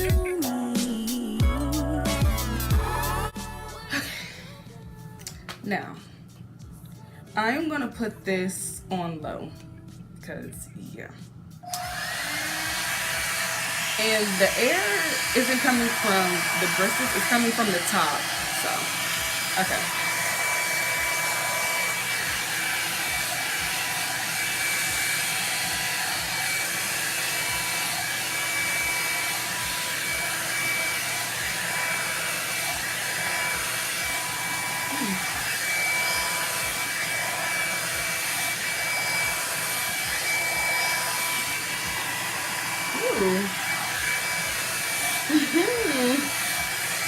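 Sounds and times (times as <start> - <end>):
hot-air brush dryer running: 3.9 - 4.5, 11.6 - 47.0.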